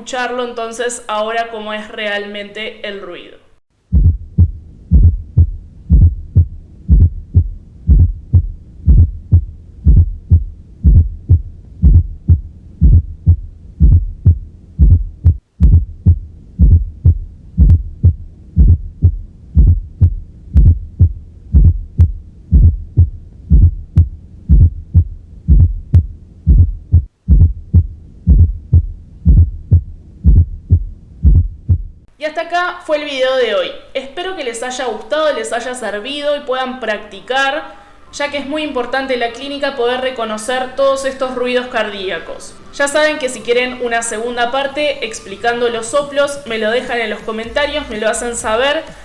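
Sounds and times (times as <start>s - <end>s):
heartbeat thumps: 3.8s - 32.1s.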